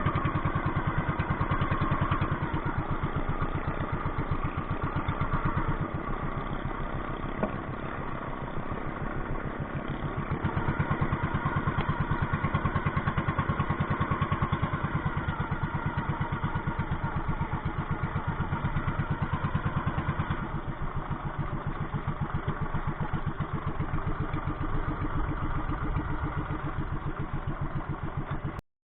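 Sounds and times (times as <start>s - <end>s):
small engine chugging: 0.0s - 28.6s.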